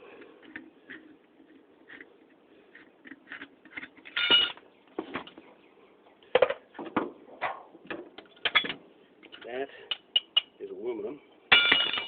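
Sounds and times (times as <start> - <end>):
metallic clank with ring: 4.2 - 4.6, 11.5 - 12.0.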